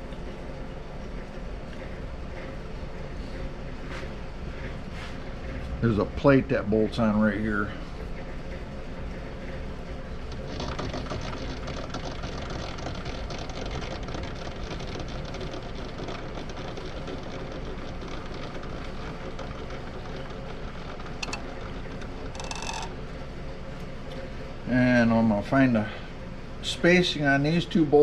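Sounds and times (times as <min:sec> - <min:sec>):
machine rattling: 0:08.2 - 0:23.2.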